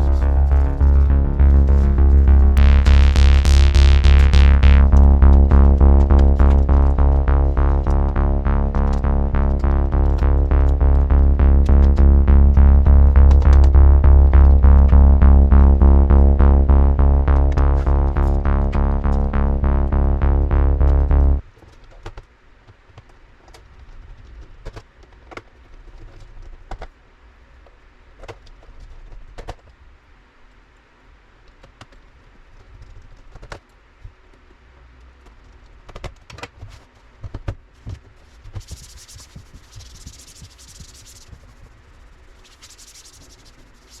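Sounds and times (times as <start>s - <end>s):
low rumble: 0.0s - 21.4s.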